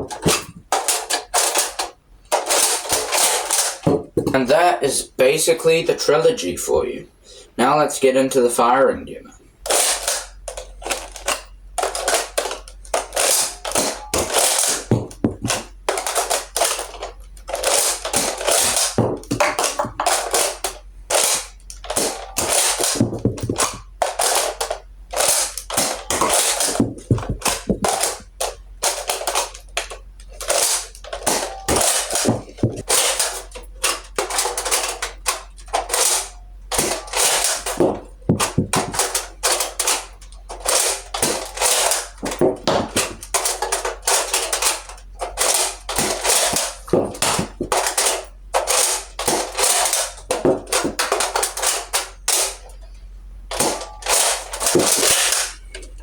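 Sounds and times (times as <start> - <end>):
toy blaster shot snap: 9.7 - 52.6.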